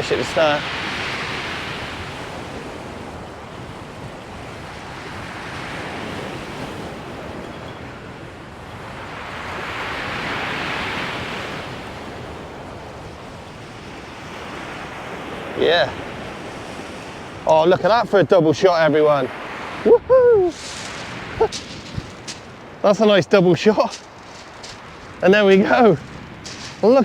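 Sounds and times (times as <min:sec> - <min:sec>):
waves breaking on shingle beach: 0:00.0 - 0:27.0
wind on microphone: 0:19.3 - 0:22.8.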